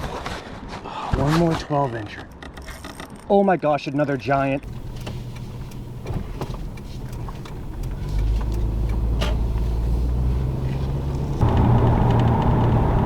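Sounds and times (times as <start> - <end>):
car engine and road rumble: 4.6 - 13.0.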